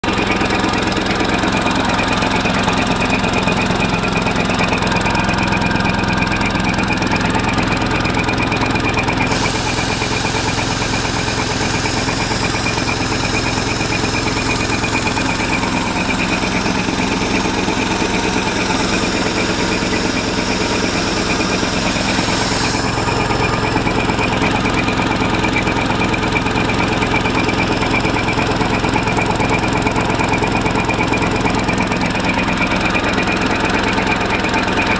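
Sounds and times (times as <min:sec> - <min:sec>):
air compressor engine whining: 0:00.0 - 0:34.8
loud high hiss: 0:09.3 - 0:23.4.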